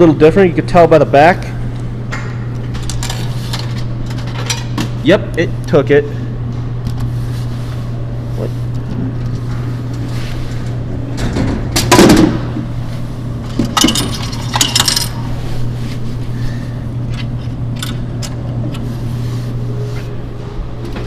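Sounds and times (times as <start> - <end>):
steady low hum: 0.0 - 21.0
vending machine clunk: 11.1 - 12.6
coins clinking into coin return: 13.8 - 15.2.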